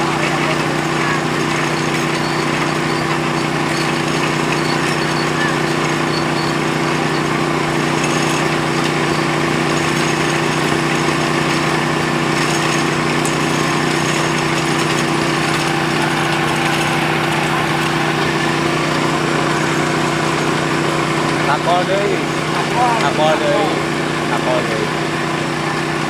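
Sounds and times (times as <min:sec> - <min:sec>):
small engine running steadily: 0:00.0 - 0:26.0.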